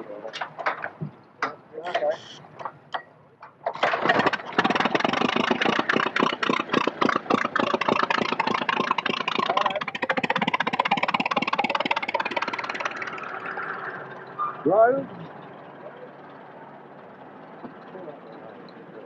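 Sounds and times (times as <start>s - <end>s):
car engine starting and idling: 0.0s - 19.0s.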